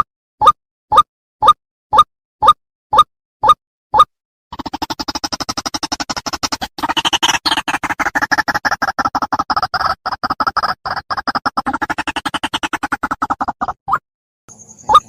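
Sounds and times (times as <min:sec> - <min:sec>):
waterhen calling rapid notes: 0:04.6 - 0:13.8.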